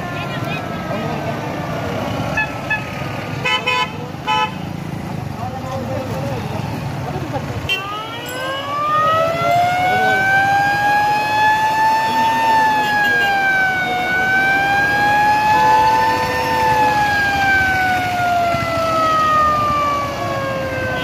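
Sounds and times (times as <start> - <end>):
police siren wailing: 7.7 - 21.0.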